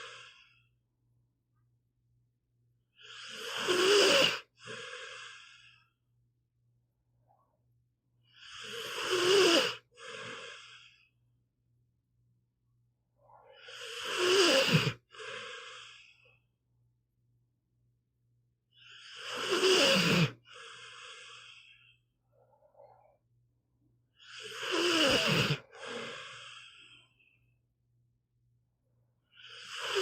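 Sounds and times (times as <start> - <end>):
dog snoring: 3.0 - 5.7, 8.3 - 10.9, 13.4 - 16.1, 18.8 - 21.8, 24.2 - 27.0, 29.3 - 30.0.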